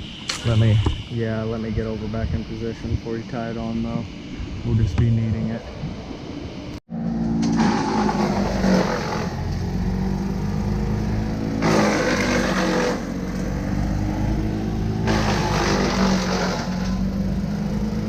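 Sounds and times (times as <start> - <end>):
small petrol engine running: 7.2 - 14.3, 15.0 - 18.0.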